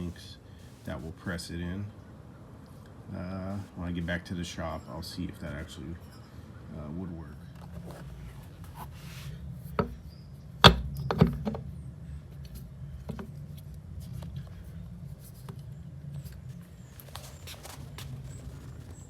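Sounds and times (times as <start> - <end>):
sharp knocks on wood: 10.6 - 11.6.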